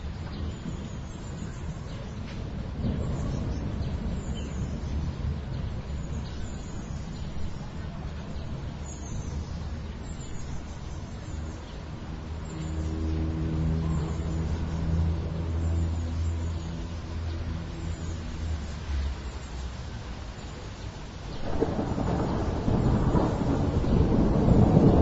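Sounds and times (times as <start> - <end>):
distant city rumble: 0.0 - 25.0
birds chirping: 0.2 - 25.0
vehicle engine hum: 12.2 - 20.3.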